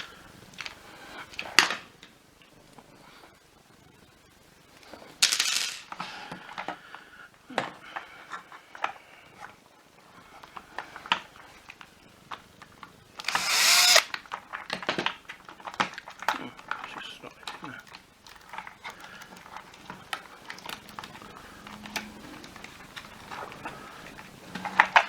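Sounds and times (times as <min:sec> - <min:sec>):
plastic parts clicking and knocking: 0:10.5 - 0:25.0
power screwdriver running: 0:13.2 - 0:14.2.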